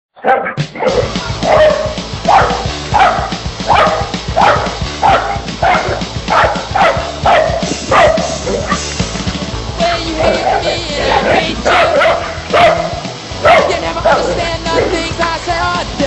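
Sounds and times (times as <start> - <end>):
dog barking: 0.2 - 8.8, 10.2 - 14.4
loud punk rock music: 0.6 - 16.0.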